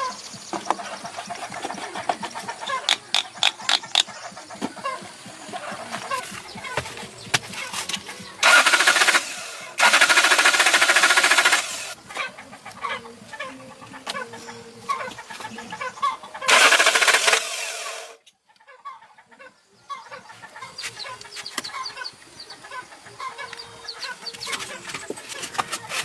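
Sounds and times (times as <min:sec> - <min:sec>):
loud hissing noise: 0:00.0 - 0:18.2
chickens clucking: 0:00.0 - 0:26.0.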